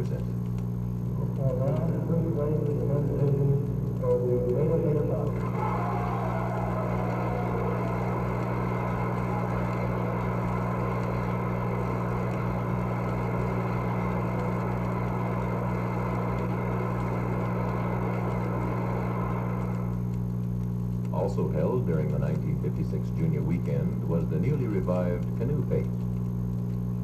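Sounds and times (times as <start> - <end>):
low electrical hum: 0.0 - 27.0
audience applauding: 4.0 - 20.0.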